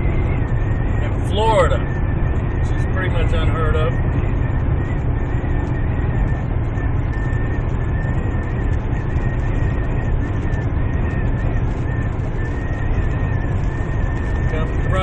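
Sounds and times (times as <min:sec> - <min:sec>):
wind buffeting vehicle: 0:00.0 - 0:15.0.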